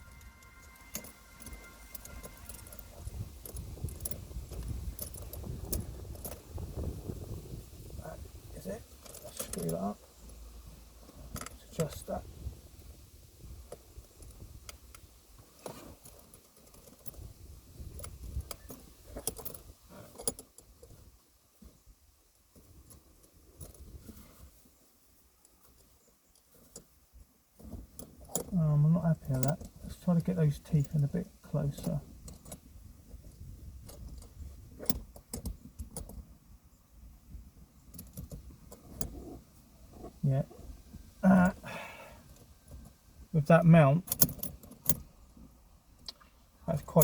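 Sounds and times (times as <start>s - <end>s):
metallic clamp clicks and rattles: 0.0s - 6.9s, 9.0s - 10.4s, 13.7s - 21.0s, 27.6s - 28.5s, 29.2s - 36.3s, 37.8s - 39.4s, 44.1s - 45.1s.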